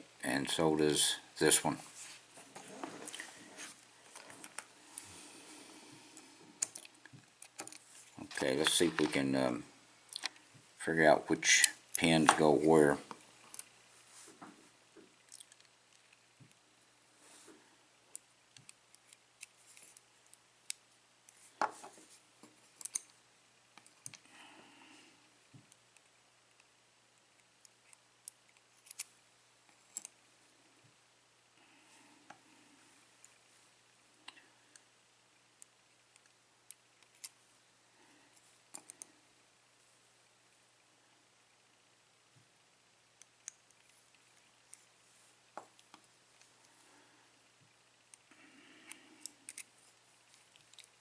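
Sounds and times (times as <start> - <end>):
small lock parts clicking: 22.8 - 23.2, 27.6 - 29.1, 49.2 - 49.7, 50.3 - 51.0.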